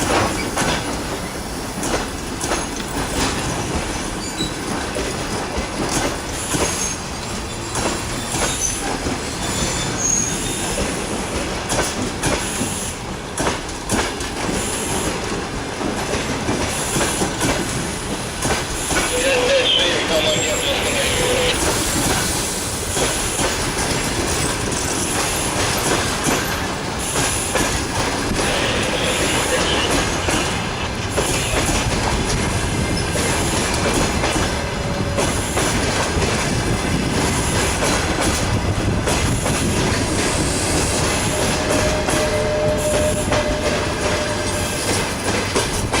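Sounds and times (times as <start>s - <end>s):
train wheels clattering over rail joints: 0.0s - 19.1s, 21.6s - 46.0s
faint wheel squeals: 9.5s - 10.6s.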